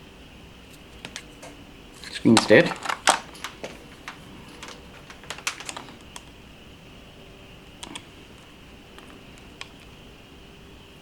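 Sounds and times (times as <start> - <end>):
plastic clicks and taps: 1.0 - 6.3.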